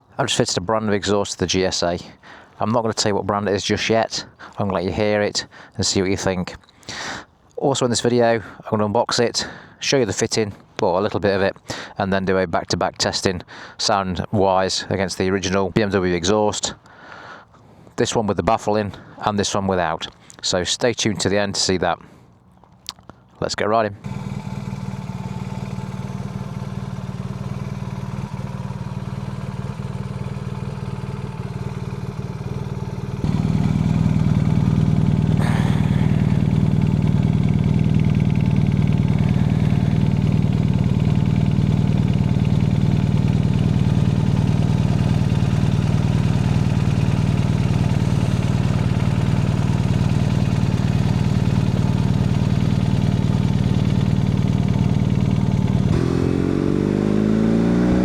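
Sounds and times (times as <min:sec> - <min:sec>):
motorcycle engine running: 0:24.0 - 0:58.0.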